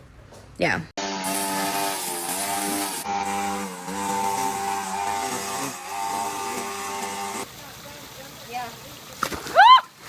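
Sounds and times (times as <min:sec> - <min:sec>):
motor running: 0:01.0 - 0:08.7.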